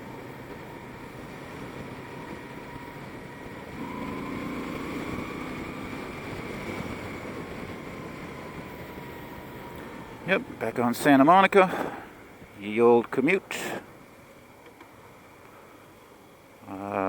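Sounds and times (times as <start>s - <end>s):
motorcycle engine accelerating: 0.0s - 10.3s
traffic: 0.0s - 17.0s.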